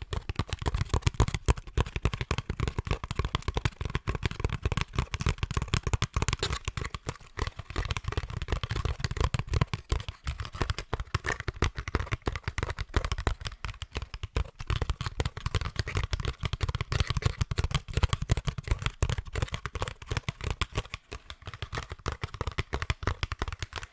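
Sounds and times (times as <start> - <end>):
tapping and scratching on basket: 0.0 - 23.9.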